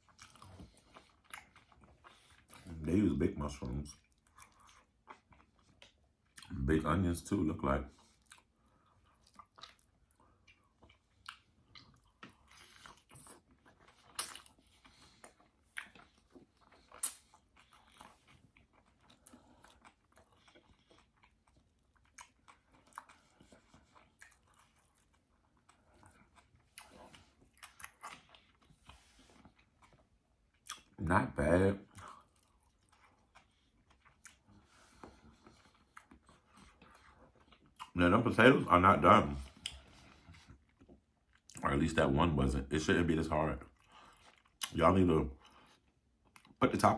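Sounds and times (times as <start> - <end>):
person chewing and biting: 0.0 - 2.8, 4.0 - 6.6, 8.0 - 31.0, 31.9 - 38.0, 43.7 - 44.8.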